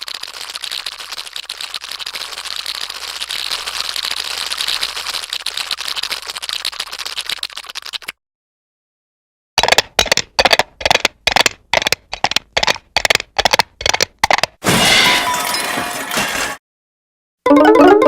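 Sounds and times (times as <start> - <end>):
cartoon rapid clicking clatter: 0.0 - 8.2, 9.6 - 14.6.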